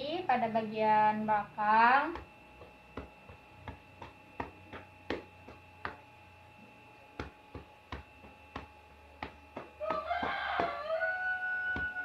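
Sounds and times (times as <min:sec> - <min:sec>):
hands clapping on a back: 0:03.7 - 0:06.0.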